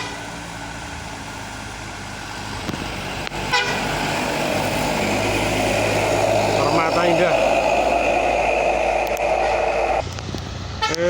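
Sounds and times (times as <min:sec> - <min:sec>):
bus horn toot: 0:00.0 - 0:00.2, 0:03.4 - 0:04.0, 0:10.8 - 0:11.0
bus engine rumble: 0:00.0 - 0:11.0.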